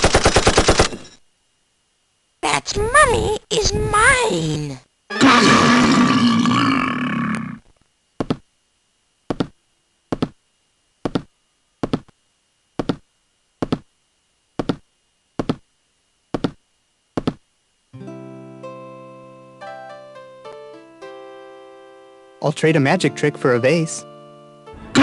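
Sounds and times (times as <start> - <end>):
piano music: 18.0 - 25.0.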